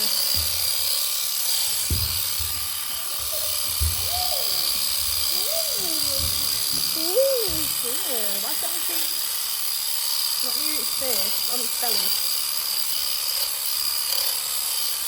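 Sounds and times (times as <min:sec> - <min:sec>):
electric shears whining: 0:00.0 - 0:15.0.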